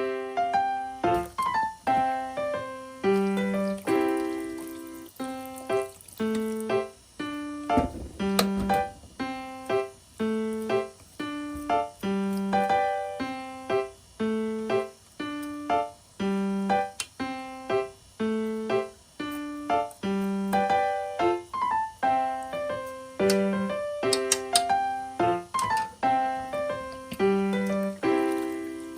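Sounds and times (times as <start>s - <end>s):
electric piano melody: 0.0s - 28.9s.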